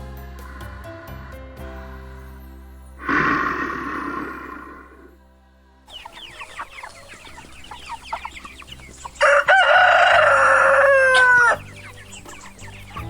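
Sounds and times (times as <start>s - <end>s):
chickens clucking: 3.0s - 5.1s, 5.9s - 13.0s
rooster crowing: 9.0s - 11.7s.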